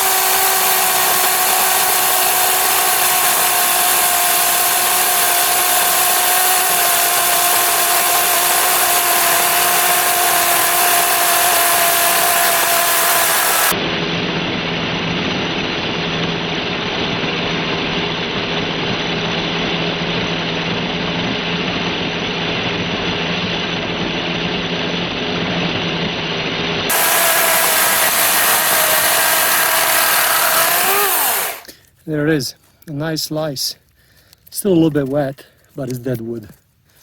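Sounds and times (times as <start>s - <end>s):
electric chainsaw cutting log: 0.0s - 13.8s, 26.9s - 31.7s.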